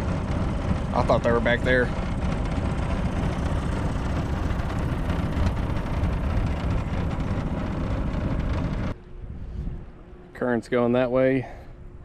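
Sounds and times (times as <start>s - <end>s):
outboard motor running: 0.0s - 9.0s
wind buffeting microphone: 0.0s - 10.2s.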